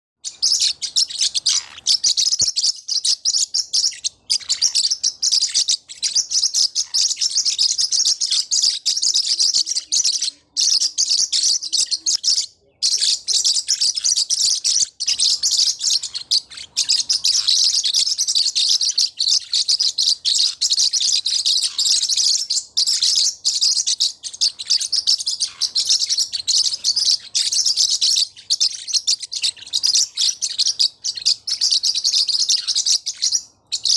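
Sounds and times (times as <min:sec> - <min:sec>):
parrotlets chirping and tweeting: 0:00.2 - 0:33.9.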